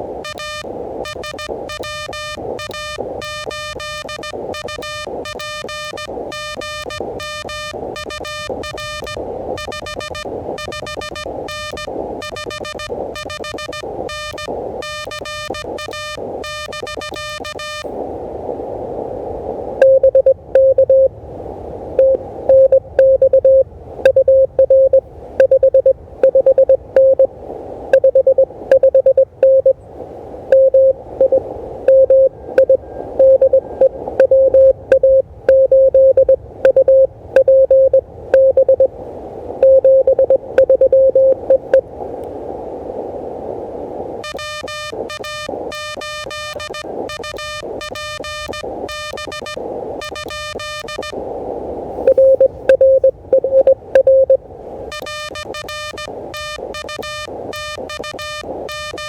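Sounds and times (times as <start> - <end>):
radio band hiss: 0.0 - 21.1, 21.7 - 59.0
buzzy keyed sidetone: 0.2 - 17.9, 44.2 - 51.2, 52.0 - 59.0
morse code tones: 0.2 - 17.9, 19.8 - 21.1, 22.0 - 27.3, 27.9 - 29.8, 30.5 - 39.0, 39.6 - 41.9, 44.2 - 51.2, 52.0 - 59.0.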